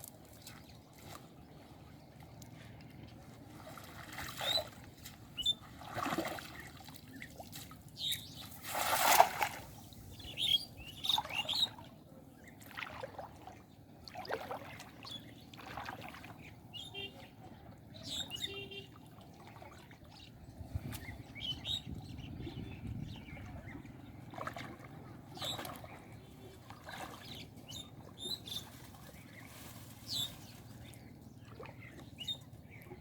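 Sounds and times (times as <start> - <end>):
water splashing in shallow water: 0.0 - 33.0
birds chirping: 6.4 - 8.6, 9.7 - 12.8, 13.6 - 19.0, 19.7 - 33.0.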